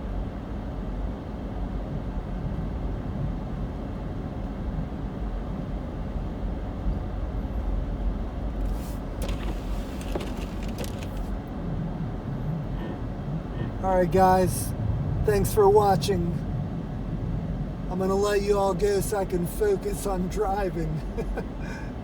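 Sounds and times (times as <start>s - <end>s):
car engine and road rumble: 0.0s - 22.0s
sharp clicks and crackles: 9.2s - 11.3s.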